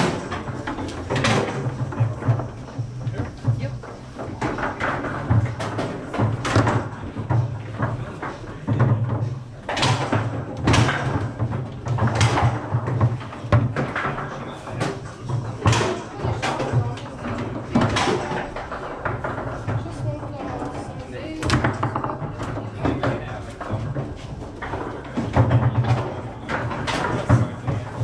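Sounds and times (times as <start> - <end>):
foosball striking and clacking: 0.0 - 28.0.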